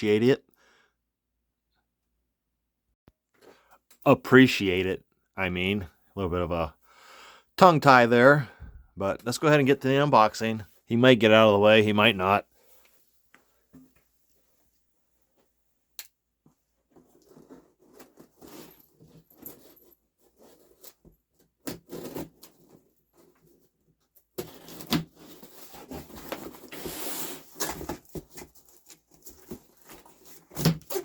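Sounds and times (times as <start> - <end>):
cardboard tearing: 21.6 - 23.0, 24.4 - 31.0.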